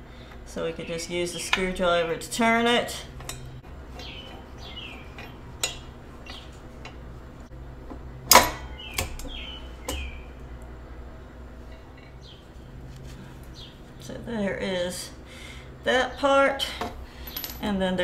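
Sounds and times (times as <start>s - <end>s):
small birds chirping: 3.9s - 6.6s, 8.7s - 10.4s, 12.1s - 12.5s, 13.5s - 14.2s.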